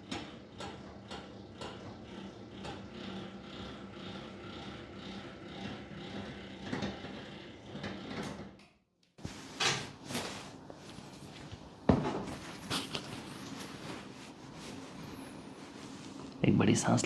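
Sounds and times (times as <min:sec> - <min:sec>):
steady low hum: 0:09.2 - 0:17.0.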